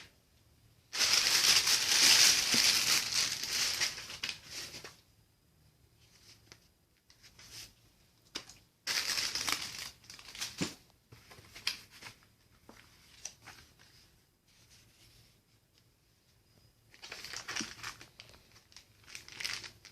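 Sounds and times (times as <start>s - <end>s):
packaging crinkling and rustling: 0.9s - 5.0s, 8.4s - 13.6s, 16.9s - 19.9s.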